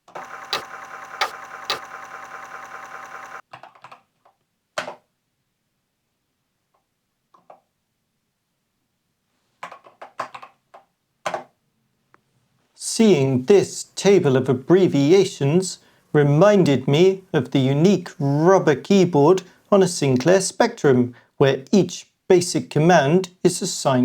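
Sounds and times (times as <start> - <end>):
steady hum: 0.0 - 3.4.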